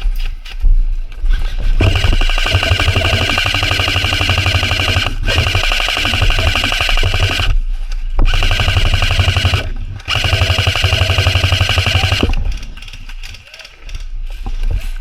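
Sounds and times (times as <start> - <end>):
airsoft guns firing bursts: 1.8 - 7.6, 8.2 - 14.1.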